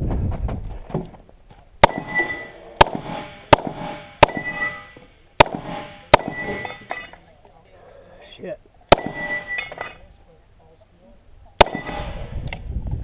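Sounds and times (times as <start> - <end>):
pistol shots: 1.8 - 6.9, 8.9 - 9.6, 11.6 - 12.2
steel targets ringing: 1.8 - 7.2, 8.9 - 10.0, 11.6 - 12.3.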